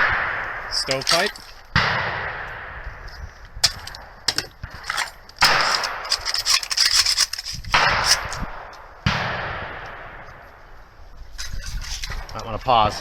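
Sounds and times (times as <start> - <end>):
rifle action clicking and rattling: 0.7 - 1.7, 3.4 - 8.5, 11.4 - 13.0.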